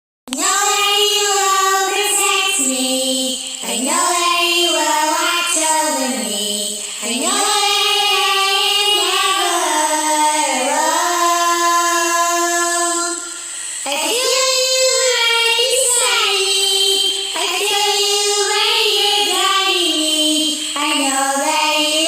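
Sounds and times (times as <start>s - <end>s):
person singing a cappella: 0.3s - 22.0s
person breathing: 6.6s - 9.8s, 13.2s - 14.0s, 20.5s - 20.8s.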